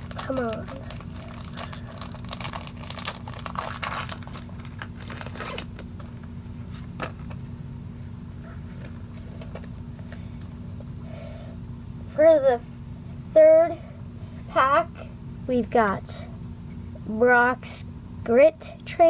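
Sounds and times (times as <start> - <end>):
foil wrapper tearing and crinkling: 0.0 - 6.3
low steady hum: 0.0 - 19.0.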